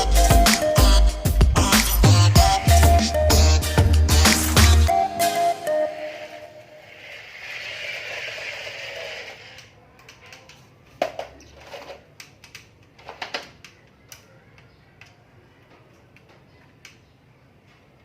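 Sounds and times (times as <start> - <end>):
plastic toy clicks and knocks: 8.4 - 15.2.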